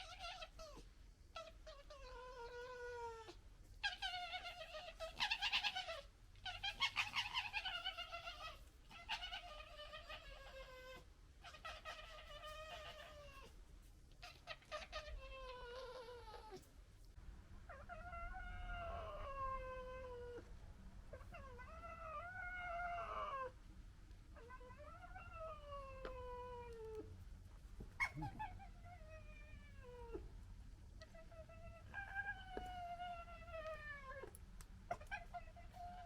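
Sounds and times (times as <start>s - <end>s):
fox clicking chatter: 28.0s - 28.7s
foxes wailing: 28.0s - 30.2s.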